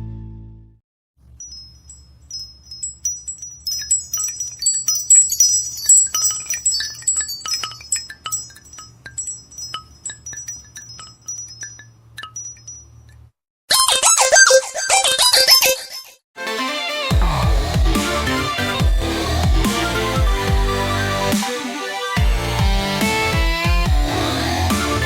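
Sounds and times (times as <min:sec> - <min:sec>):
wind-chime ringtone tinkling: 0:01.2 - 0:16.0.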